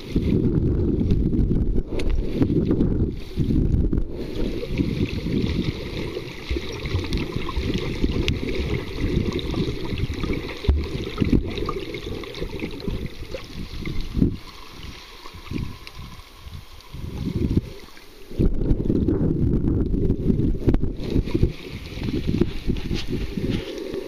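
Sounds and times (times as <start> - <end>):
low rumble of moving seawater: 0.0 - 24.0
faint hiss: 1.9 - 18.8.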